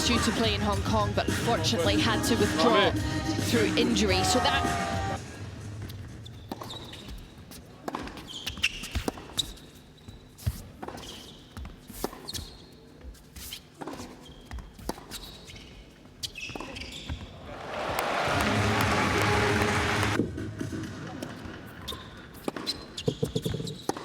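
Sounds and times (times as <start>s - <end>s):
ball bouncing on court: 5.8s - 9.6s, 18.3s - 24.0s
tennis shoes squeaking: 5.8s - 17.5s, 21.2s - 24.0s
racket hitting tennis ball: 14.8s - 15.2s, 21.2s - 24.0s.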